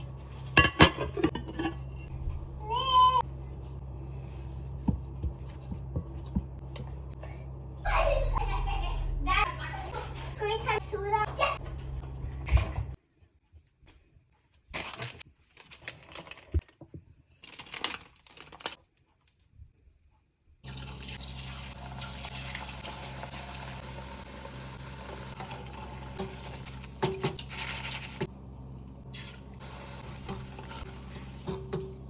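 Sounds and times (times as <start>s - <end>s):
oil sizzling: 20.6s - 32.0s.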